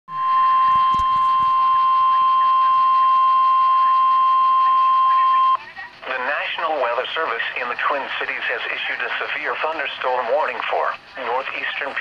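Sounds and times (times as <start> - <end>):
high steady alarm tone: 0.1 - 6.9.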